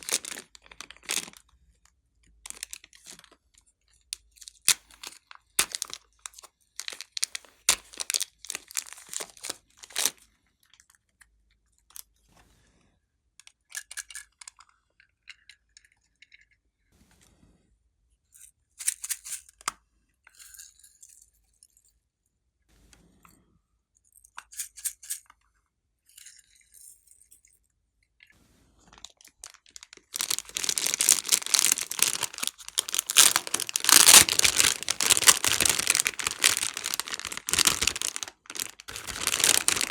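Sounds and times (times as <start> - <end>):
slime squishing and crackling: 0.0 - 1.4, 2.5 - 3.3, 4.6 - 10.2, 29.0 - 39.9.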